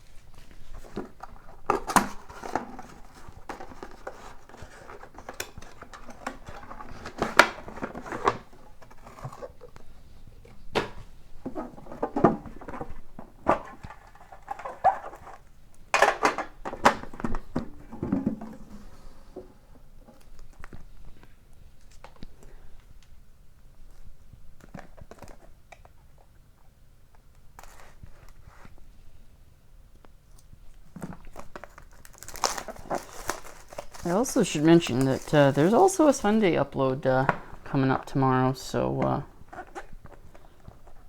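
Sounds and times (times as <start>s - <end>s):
cardboard rustling: 0.0s - 21.1s, 30.9s - 41.0s.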